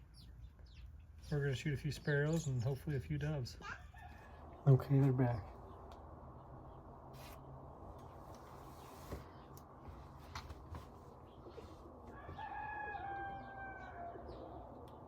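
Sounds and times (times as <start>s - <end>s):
rooster crowing: 3.6s - 4.6s, 12.0s - 14.7s.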